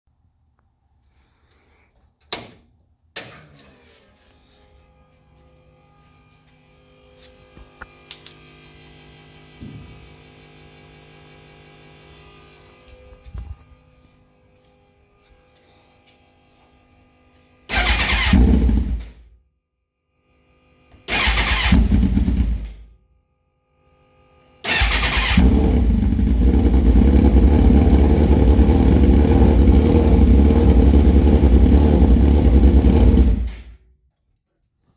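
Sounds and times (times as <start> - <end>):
motorcycle engine starting: 17.7 - 19.2, 21.0 - 22.9, 24.6 - 33.8.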